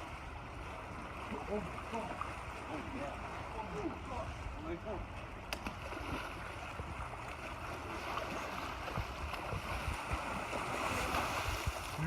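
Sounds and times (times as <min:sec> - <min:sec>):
water from moving boat: 0:00.0 - 0:12.0
wind: 0:00.0 - 0:12.0.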